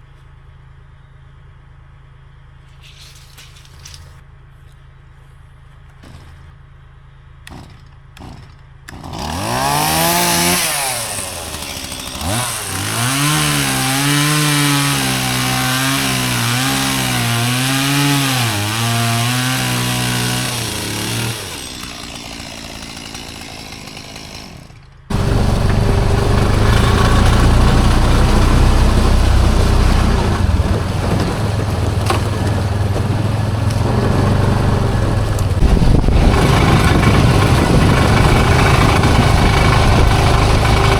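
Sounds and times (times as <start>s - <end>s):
small gasoline engine running: 7.5s - 40.9s
steady machine running: 25.1s - 40.9s.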